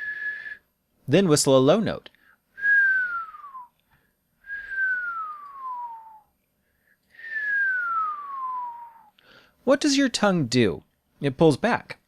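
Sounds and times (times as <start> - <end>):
person whistling sliding notes: 0.0 - 0.7, 2.6 - 3.8, 4.4 - 6.3, 7.2 - 9.1.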